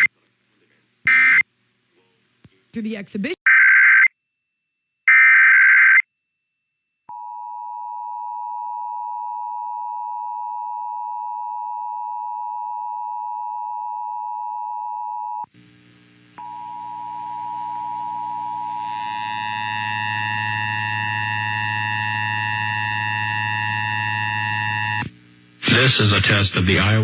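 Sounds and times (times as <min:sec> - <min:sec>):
broadcast audio: 0:15.4 - 0:27.0.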